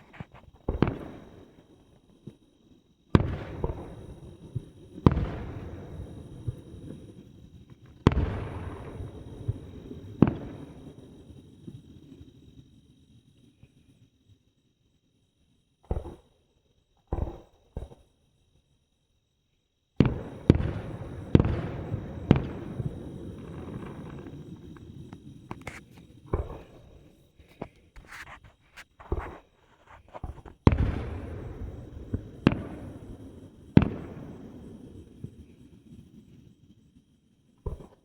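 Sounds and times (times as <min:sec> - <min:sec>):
fireworks bangs: 0:00.0 - 0:01.6, 0:03.2 - 0:07.2, 0:07.9 - 0:11.4, 0:20.0 - 0:35.6
fireworks booming: 0:00.0 - 0:01.6, 0:03.2 - 0:11.8, 0:20.0 - 0:28.1, 0:29.0 - 0:35.9
fireworks crackling: 0:00.0 - 0:01.8, 0:03.2 - 0:12.6, 0:20.0 - 0:37.0
scattered pops: 0:20.0 - 0:26.8.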